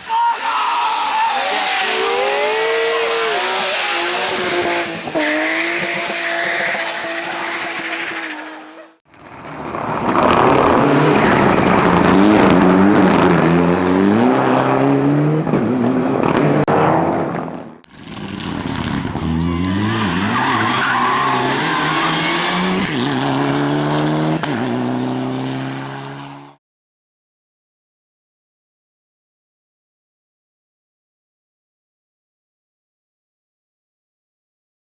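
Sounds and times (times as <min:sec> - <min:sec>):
race car engine revving: 0:01.0 - 0:26.6.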